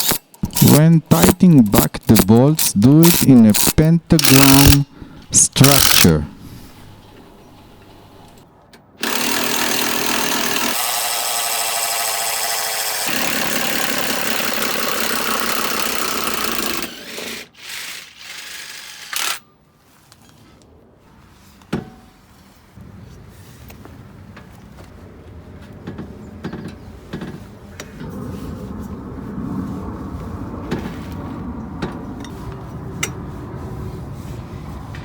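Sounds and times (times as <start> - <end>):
power tool running: 0.0 - 8.4, 9.0 - 19.4.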